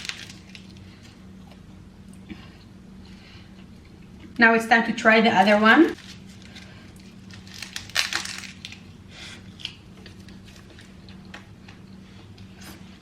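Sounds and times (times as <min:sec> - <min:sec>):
crispy seaweed wrapper crackling: 0:00.0 - 0:01.1, 0:06.0 - 0:08.9
steady low hum: 0:00.0 - 0:13.0.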